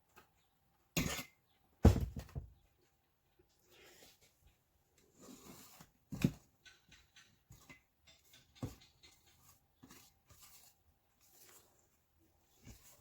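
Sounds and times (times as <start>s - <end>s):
utensils scraping a mixing bowl: 5.1s - 11.8s.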